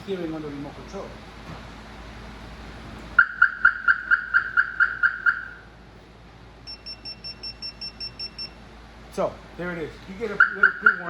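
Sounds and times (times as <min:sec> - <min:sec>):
alarm siren chirps: 0:03.2 - 0:05.7, 0:06.7 - 0:08.6, 0:10.4 - 0:11.0
pager remote beeps: 0:06.7 - 0:08.6.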